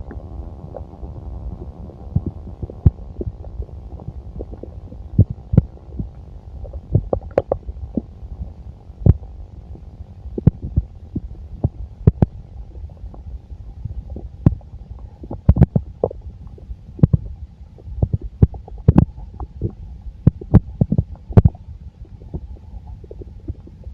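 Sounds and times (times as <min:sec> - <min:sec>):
stomach gurgling: 0:00.0 - 0:23.9.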